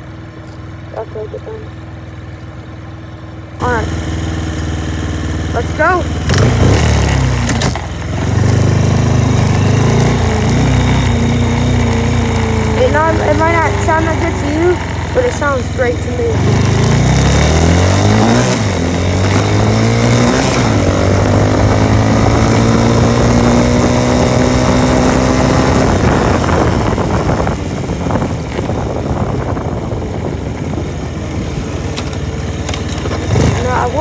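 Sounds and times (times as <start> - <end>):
motorcycle engine accelerating: 0.0 - 34.0.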